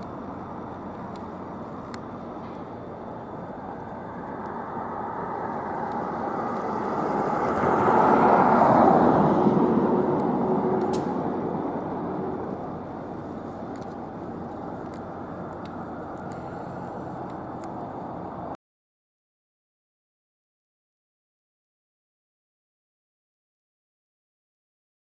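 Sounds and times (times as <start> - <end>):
vehicle passing by: 3.6 - 18.6.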